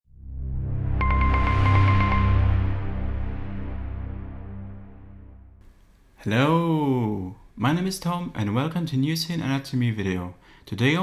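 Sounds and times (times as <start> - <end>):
low synthesizer bass drone: 0.1 - 5.6
fast repeating high synth notes: 1.0 - 2.9.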